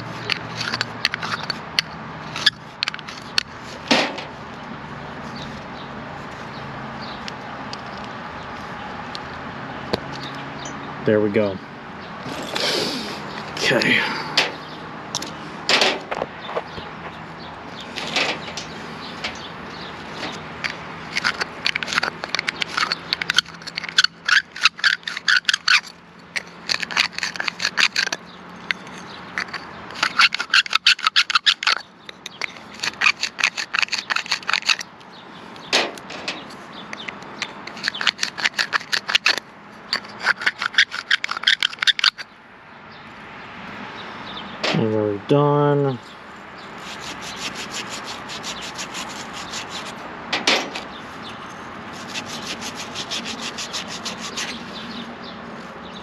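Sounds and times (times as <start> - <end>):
sanding copper pipe: 19.4 - 31.8, 32.5 - 34.8, 37.6 - 42.2, 46.8 - 50.0, 51.4 - 55.1.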